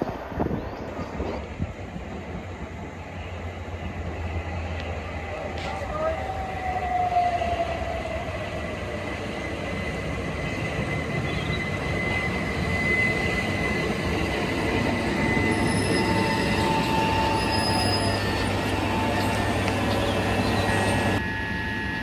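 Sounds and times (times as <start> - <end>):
train wheels rumbling on rails: 0.0 - 22.0
lower squeal tone: 4.3 - 22.0
high wheel squeal: 9.7 - 22.0.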